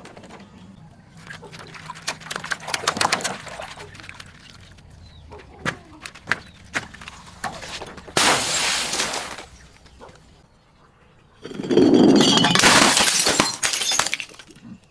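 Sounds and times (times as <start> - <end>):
glass bottle breaking and crunching: 8.0 - 9.6, 11.4 - 14.6.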